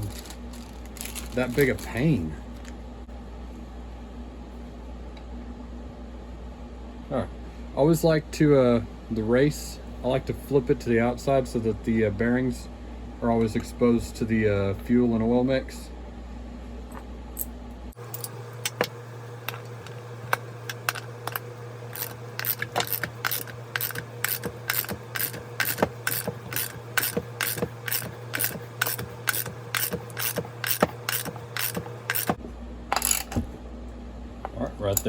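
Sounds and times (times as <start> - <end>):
steady hum: 0.0 - 35.0
ratchet wrench clicking: 22.0 - 32.3.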